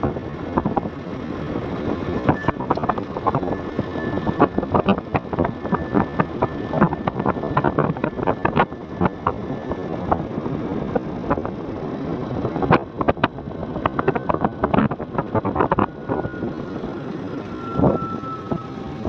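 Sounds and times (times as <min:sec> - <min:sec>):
knocks and rattles on bumps: 0:00.0 - 0:00.9, 0:04.3 - 0:11.6, 0:12.4 - 0:15.9
motorcycle engine rumble: 0:00.0 - 0:19.0
wind: 0:00.0 - 0:19.0.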